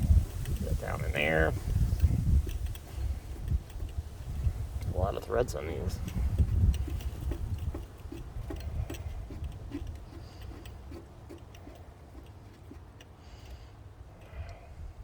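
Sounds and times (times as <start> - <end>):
low wind rumble: 0.0 - 15.0
socket ratchet clicking: 1.6 - 4.5, 6.0 - 13.6.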